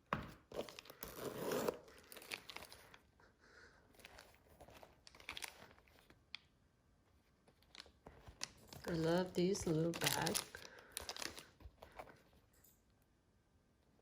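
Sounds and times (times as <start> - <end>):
handbag rustling and crinkling: 0.5 - 3.0, 4.0 - 6.2, 7.4 - 12.5.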